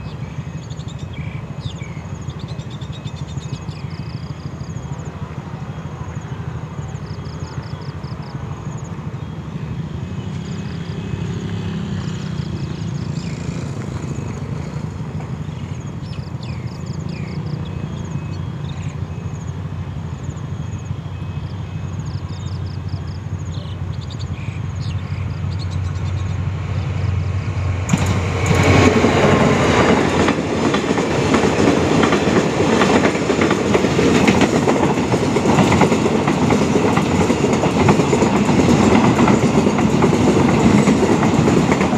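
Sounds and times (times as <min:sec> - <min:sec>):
locomotive engine drone: 0:00.0 - 0:41.9
train wagons clattering over rail joints: 0:27.8 - 0:41.9.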